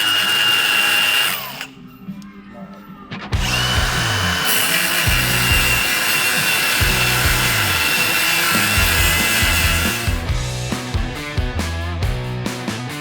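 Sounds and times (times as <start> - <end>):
cordless power tool whining: 0.0 - 1.8, 3.4 - 10.3
background music with bass beat: 10.1 - 13.0.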